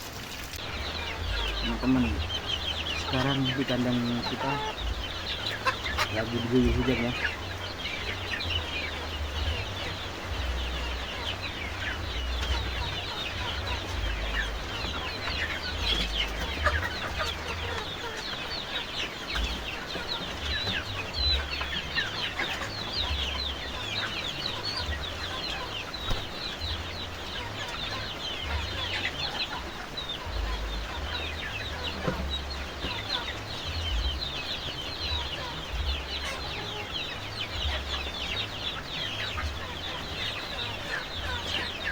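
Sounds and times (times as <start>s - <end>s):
chickens clucking: 0.0s - 41.9s
rain on a coop: 0.0s - 41.9s.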